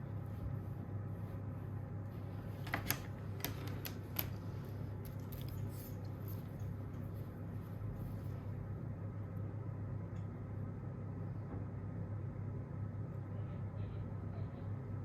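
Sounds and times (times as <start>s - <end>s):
steady low hum: 0.0s - 15.0s
light clicks and taps of handling: 2.6s - 4.4s.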